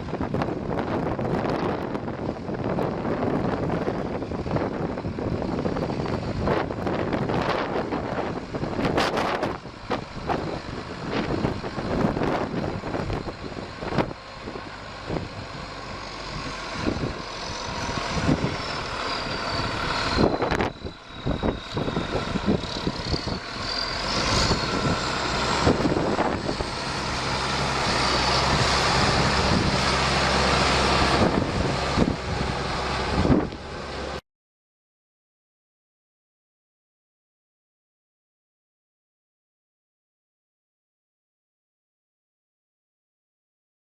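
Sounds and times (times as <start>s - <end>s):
tractor diesel engine running: 0.0s - 34.2s.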